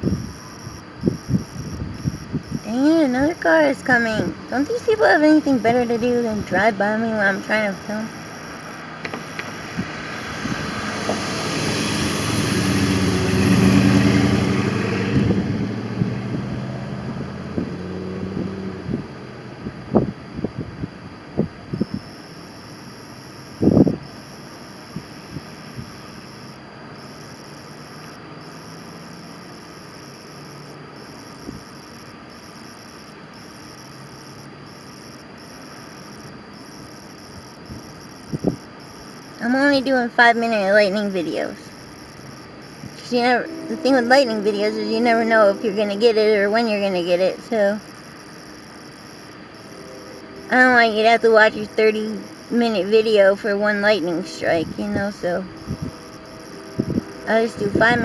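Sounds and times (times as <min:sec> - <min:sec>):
crickets chirping: 0:00.0 - 0:58.0
car driving past: 0:07.5 - 0:20.6, 0:22.6 - 0:39.3, 0:41.3 - 0:58.0
short knocks: 0:09.0 - 0:09.9.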